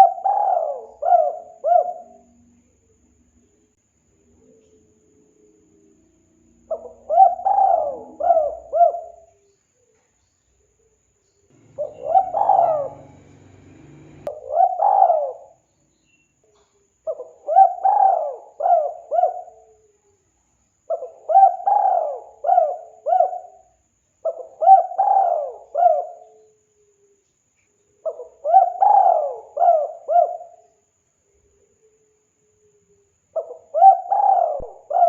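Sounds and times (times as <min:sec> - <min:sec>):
dove cooing: 0:00.0 - 0:02.4, 0:06.7 - 0:09.4, 0:11.6 - 0:15.6, 0:17.1 - 0:19.9, 0:20.9 - 0:26.5, 0:28.0 - 0:30.6, 0:33.4 - 0:35.0.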